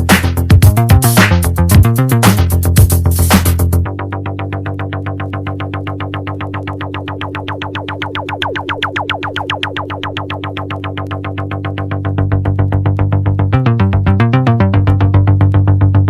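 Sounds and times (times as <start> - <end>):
held synth bass: 0.0 - 16.0
repeated synth notes: 3.8 - 16.0.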